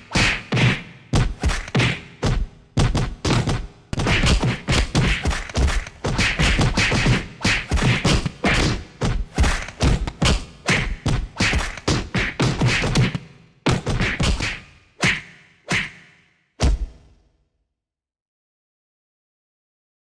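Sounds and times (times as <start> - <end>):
punch impacts: 0.2 - 16.0.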